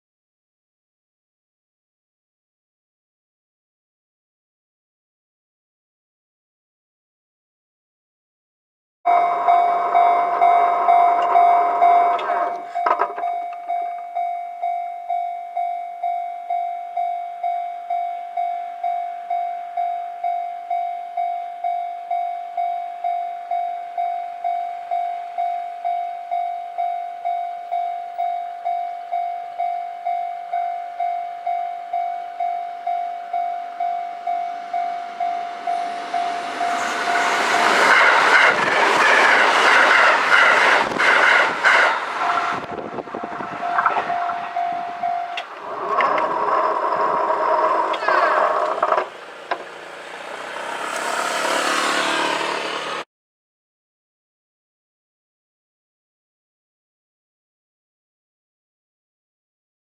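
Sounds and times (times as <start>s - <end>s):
level-crossing bell dinging: 9.1s - 38.4s, 42.2s - 45.6s
train wheels clattering over joints: 36.5s - 42.7s, 45.3s - 49.8s.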